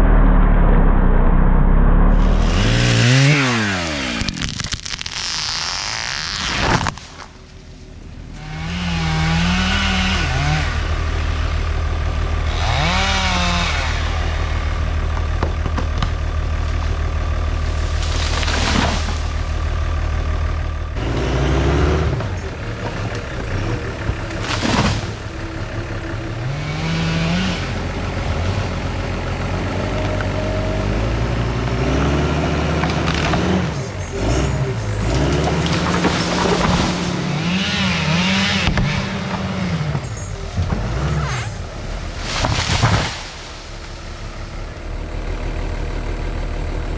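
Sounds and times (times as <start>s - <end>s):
engine droning and revving: 0.0s - 46.9s
sharp cracks: 2.2s - 7.5s, 35.1s - 44.0s.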